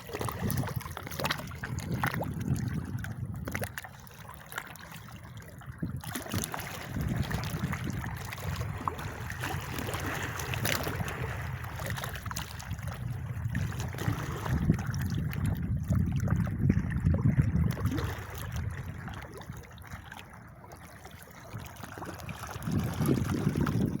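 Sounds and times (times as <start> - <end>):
low rumble: 10.8 - 19.2.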